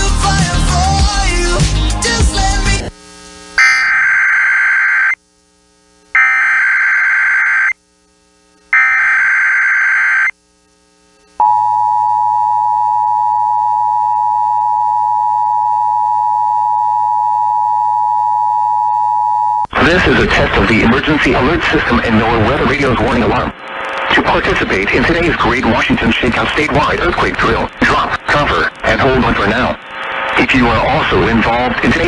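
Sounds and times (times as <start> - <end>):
steady warning alarm tone: 3.6 - 5.2, 8.8 - 10.3.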